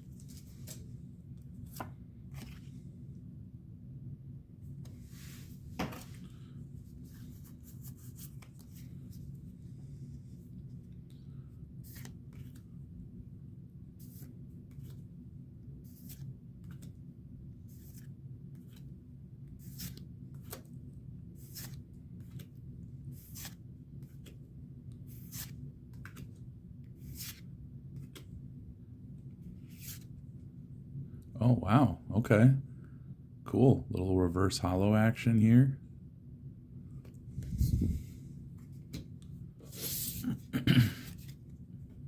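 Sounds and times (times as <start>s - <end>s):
steady low hum: 0.0s - 42.0s
trading cards sliding: 11.8s - 12.6s, 19.6s - 20.7s, 21.4s - 24.4s, 25.0s - 26.3s, 27.0s - 28.3s, 29.6s - 30.1s.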